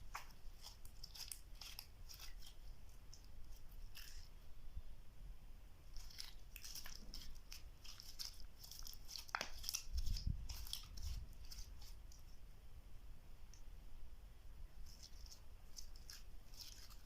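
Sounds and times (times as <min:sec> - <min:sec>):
slime clicking and crackling: 0:00.0 - 0:04.3, 0:05.9 - 0:12.2.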